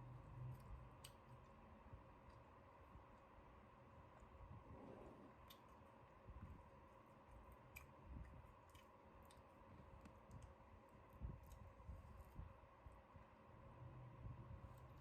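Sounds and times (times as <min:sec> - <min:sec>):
faint irregular clicks: 0:07.4 - 0:10.7.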